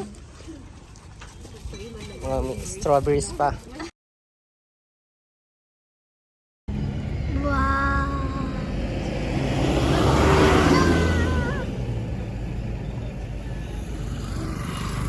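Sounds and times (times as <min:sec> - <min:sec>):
car passing: 0:06.7 - 0:15.0
low engine rumble: 0:06.7 - 0:15.0.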